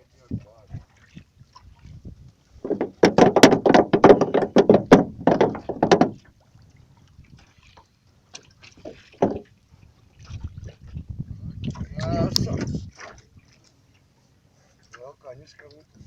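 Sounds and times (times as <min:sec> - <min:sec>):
knocks and thumps on a boat: 0:00.2 - 0:06.4, 0:07.3 - 0:13.6.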